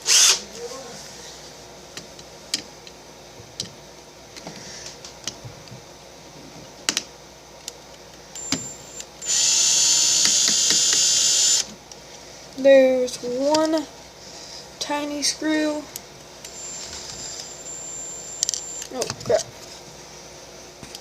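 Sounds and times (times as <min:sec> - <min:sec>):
electric screwdriver whirring: 0:08.4 - 0:11.7, 0:16.5 - 0:19.0
screwdriver bit tapping parts: 0:10.2 - 0:11.1.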